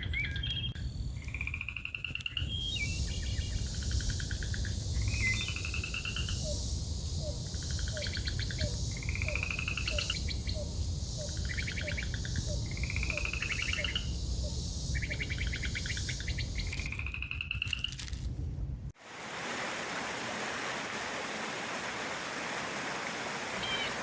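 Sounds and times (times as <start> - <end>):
buzzy pulsed bird calls: 1.7 - 17.7, 21.8 - 24.0
birds trilling: 7.2 - 17.9, 21.8 - 24.0.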